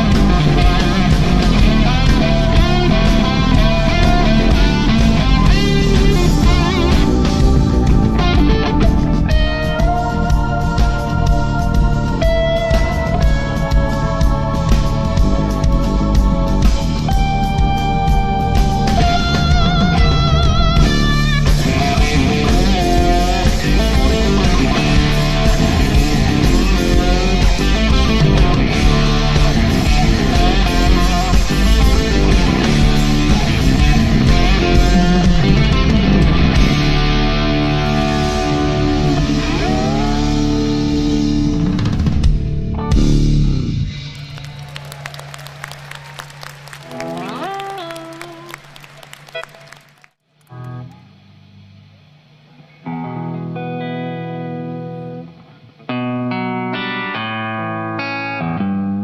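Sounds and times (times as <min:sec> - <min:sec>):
instrumental rock band playing: 0:00.0 - 0:49.8, 0:52.9 - 0:59.0
electric guitar sustained bending notes: 0:00.0 - 0:51.2, 0:52.7 - 0:59.0
people clapping: 0:44.0 - 0:50.9.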